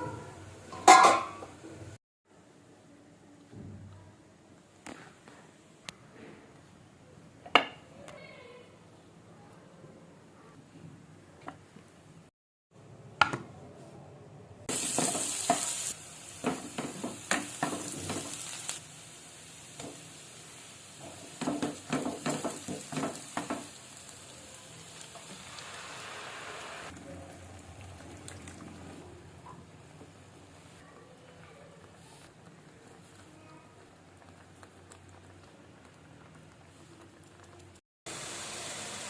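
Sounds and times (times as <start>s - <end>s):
sauce sizzling in a pan: 14.7s - 28.7s, 37.4s - 39.0s.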